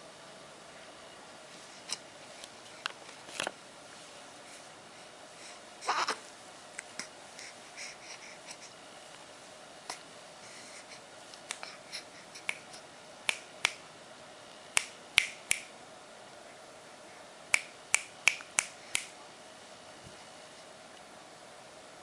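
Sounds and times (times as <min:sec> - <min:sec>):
sharp snapping clicks: 0:13.3 - 0:13.8, 0:14.8 - 0:15.7, 0:17.5 - 0:19.1.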